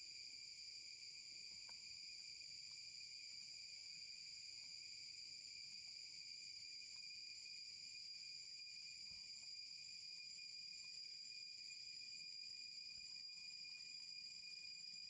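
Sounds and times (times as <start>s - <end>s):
faint ticks: 1.6s - 1.8s.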